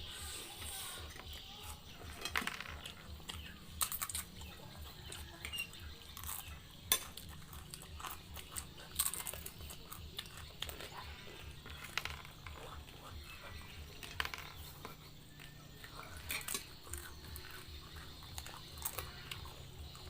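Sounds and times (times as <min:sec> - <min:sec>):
chewing noodles: 0:00.0 - 0:20.0
cutlery clicking on a plate: 0:05.0 - 0:09.5, 0:16.2 - 0:17.7.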